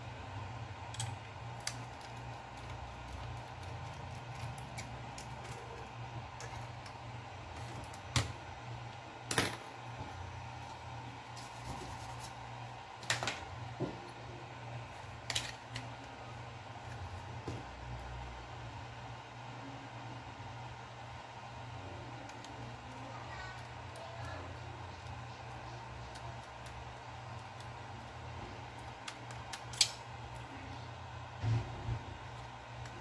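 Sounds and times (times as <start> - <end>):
low steady hum: 0.0 - 33.0
tools clicking on small parts: 0.9 - 5.6, 15.2 - 15.9, 28.7 - 30.4.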